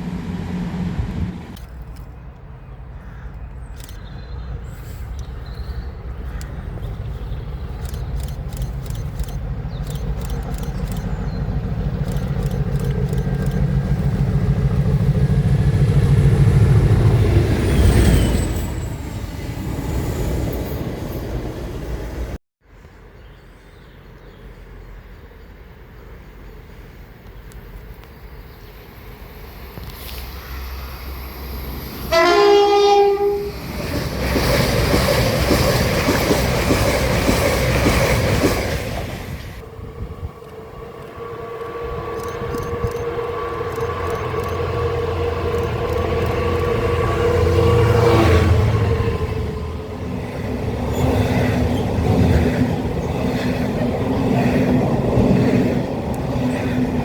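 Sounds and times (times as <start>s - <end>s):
train wheels rushing on rails: 6.1s - 22.4s, 28.8s - 57.0s
train horn: 32.1s - 33.6s, 40.8s - 49.3s
train motor tone: 39.7s - 49.0s.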